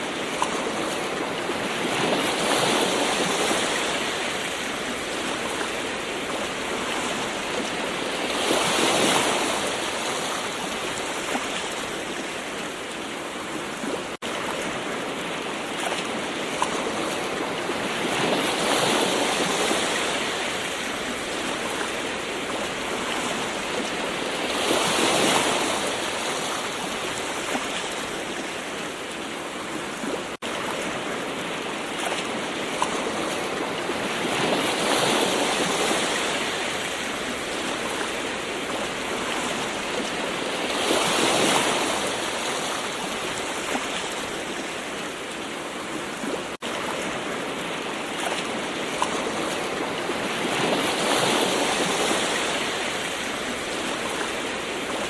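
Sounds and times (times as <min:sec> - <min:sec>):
ocean waves washing in: 0:00.0 - 0:55.0.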